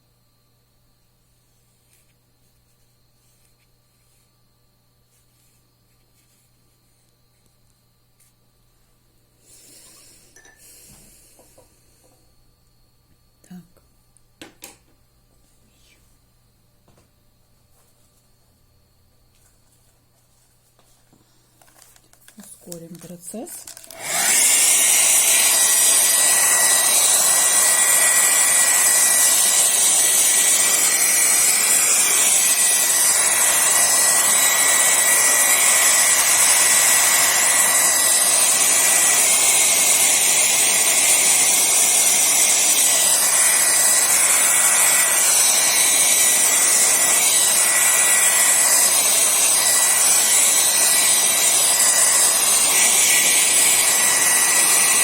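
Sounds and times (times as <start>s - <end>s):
hair dryer running: 22.7s - 55.0s.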